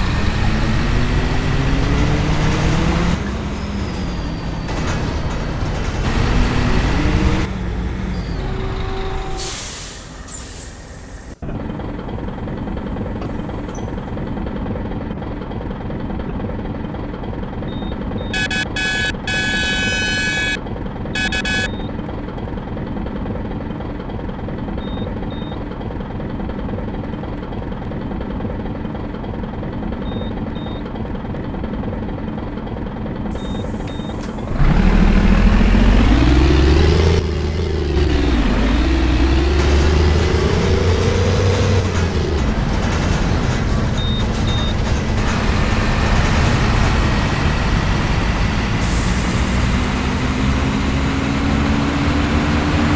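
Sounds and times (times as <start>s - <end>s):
engine pulling away: 0.0s - 8.5s, 32.9s - 52.9s
diesel engine idling: 7.6s - 50.4s
electronic beeping: 17.7s - 20.6s, 21.2s - 21.9s.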